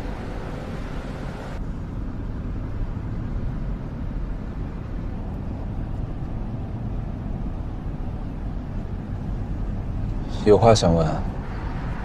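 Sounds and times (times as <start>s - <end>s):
car interior rumble: 0.0s - 12.0s.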